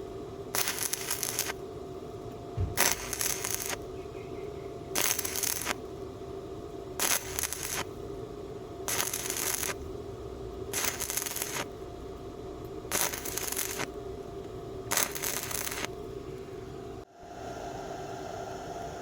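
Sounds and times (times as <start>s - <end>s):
welding arc crackling: 0.0s - 1.6s, 2.6s - 4.0s, 4.9s - 6.1s, 6.8s - 16.5s
steady hum: 0.0s - 19.0s.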